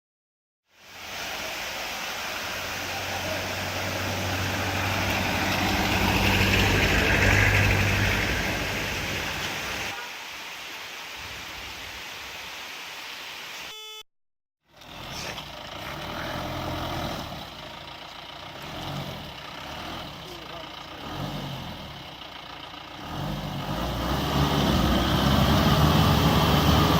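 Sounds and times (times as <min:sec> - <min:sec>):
vehicle engine humming: 0:00.9 - 0:10.0, 0:14.7 - 0:26.9.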